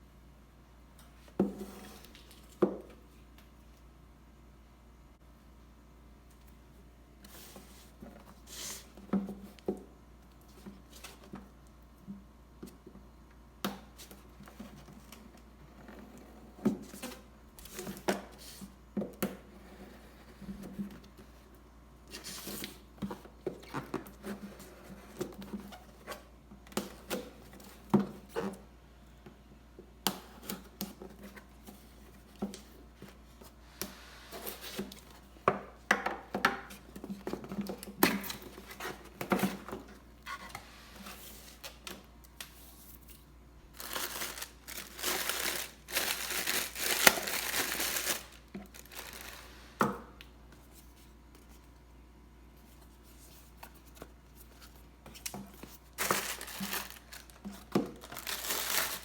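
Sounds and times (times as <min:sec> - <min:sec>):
wrapping crinkling and tearing: 0:43.7 - 0:49.7, 0:55.6 - 0:59.0.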